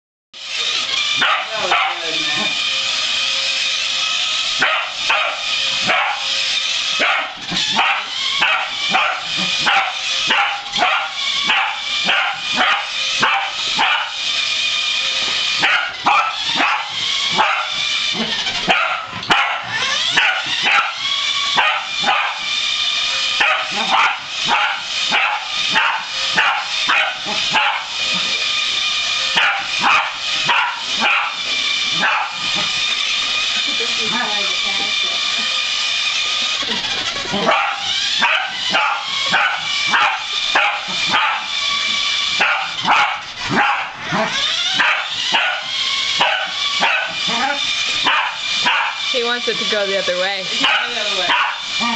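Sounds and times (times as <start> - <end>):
dog barking sharply: 1.2 - 2.0, 29.4 - 31.4, 32.0 - 32.4, 37.5 - 41.5, 42.4 - 44.0, 44.8 - 47.2, 48.1 - 49.0, 50.6 - 51.6.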